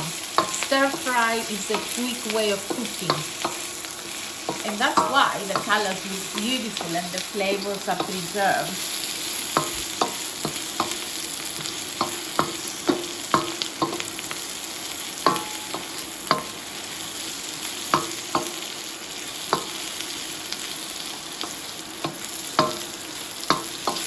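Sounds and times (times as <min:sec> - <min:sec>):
vegetables sizzling in wok: 0:00.0 - 0:24.0
utensil knocking on wok: 0:02.6 - 0:03.7, 0:04.4 - 0:05.9, 0:09.5 - 0:11.0, 0:12.0 - 0:14.1, 0:15.2 - 0:16.6, 0:22.0 - 0:22.9, 0:23.5 - 0:24.0.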